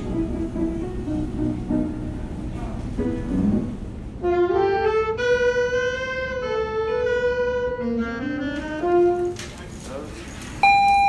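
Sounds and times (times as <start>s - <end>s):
wind instrument slow melody: 4.1s - 9.4s.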